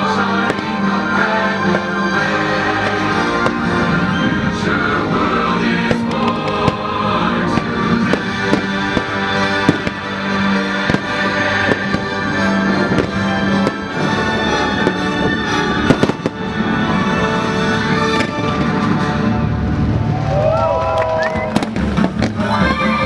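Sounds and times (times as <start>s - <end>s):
music from loudspeakers: 0.0s - 19.2s, 21.5s - 23.0s
fireworks bangs: 1.6s - 4.5s, 5.8s - 19.1s, 21.3s - 22.6s.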